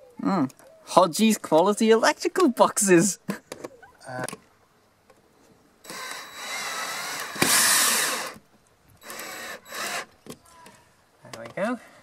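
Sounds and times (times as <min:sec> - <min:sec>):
power drill driving a screw: 0:05.9 - 0:08.4, 0:09.0 - 0:10.1.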